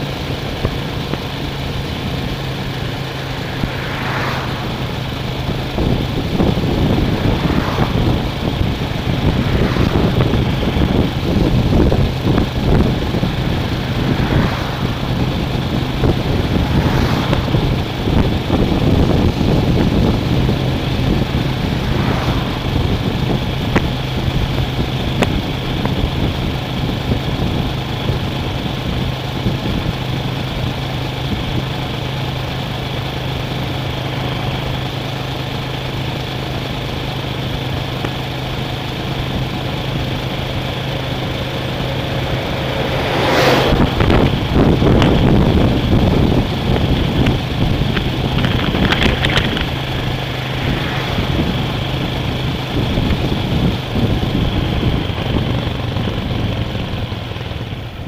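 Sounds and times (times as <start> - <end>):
motor vehicle engine hum: 0.0 - 58.0.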